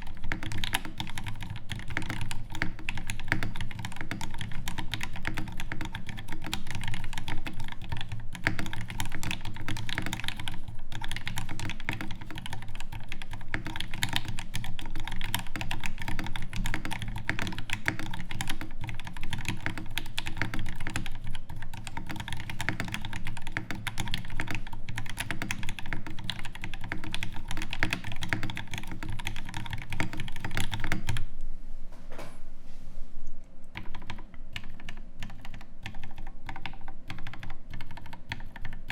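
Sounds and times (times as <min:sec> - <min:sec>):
fast mechanical keyboard typing: 0:00.0 - 0:31.3, 0:33.7 - 0:38.9.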